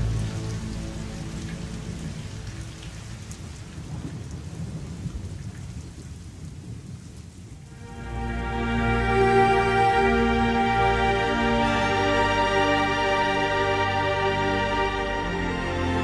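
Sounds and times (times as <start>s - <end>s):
music: 0.0s - 3.3s, 7.7s - 16.0s
steady rain falling: 0.0s - 16.0s
thunder rumbling: 3.3s - 8.2s.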